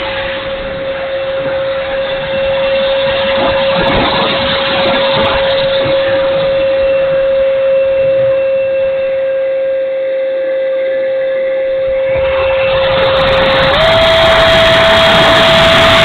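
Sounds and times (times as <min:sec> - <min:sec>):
wind rumbling on microphone: 0:00.0 - 0:10.2, 0:11.1 - 0:16.0
electric ducted fan whining: 0:00.0 - 0:16.0.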